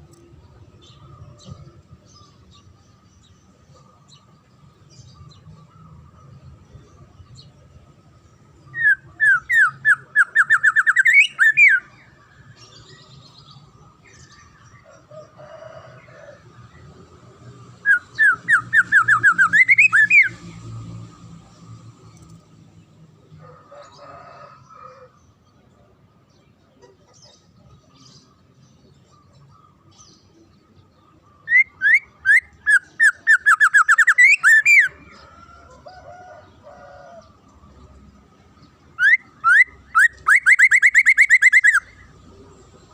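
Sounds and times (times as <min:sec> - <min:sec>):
songbird whistling: 0:08.7 - 0:11.9, 0:17.8 - 0:20.4, 0:31.4 - 0:35.0, 0:39.0 - 0:42.0.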